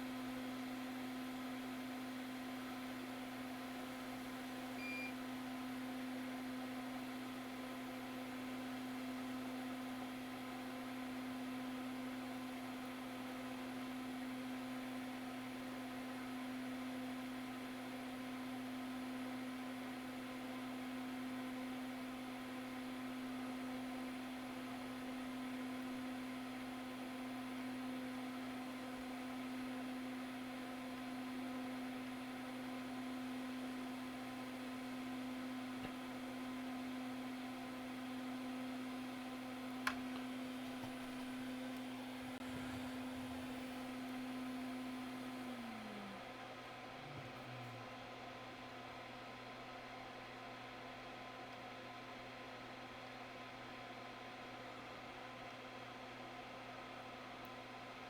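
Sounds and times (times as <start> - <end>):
extractor fan humming: 27.1 - 50.7.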